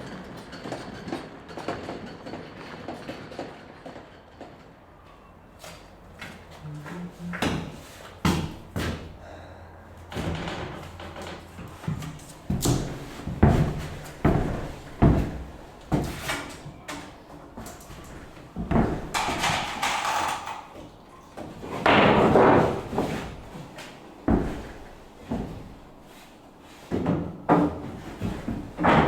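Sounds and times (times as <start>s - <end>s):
sharp knocks: 7.4s - 9.2s.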